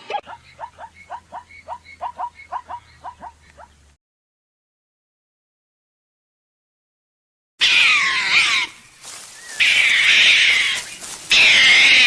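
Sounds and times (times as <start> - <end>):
animal calling: 0.0 - 3.8, 7.6 - 12.0.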